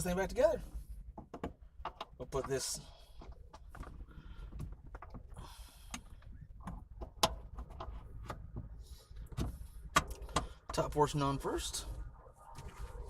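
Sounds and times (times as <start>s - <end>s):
clicks and knocks of parts: 9.3s - 10.8s.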